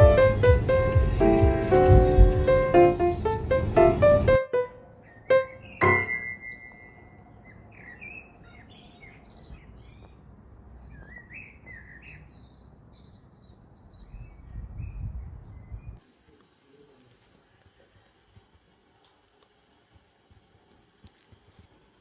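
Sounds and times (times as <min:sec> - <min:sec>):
small birds chirping: 0:01.0 - 0:03.3, 0:04.6 - 0:16.0.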